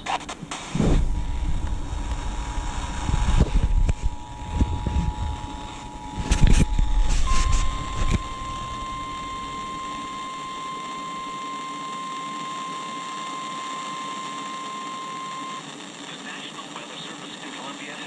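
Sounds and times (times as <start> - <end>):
low rumbling: 0.5 - 10.1
steady warning alarm tone: 1.0 - 15.7.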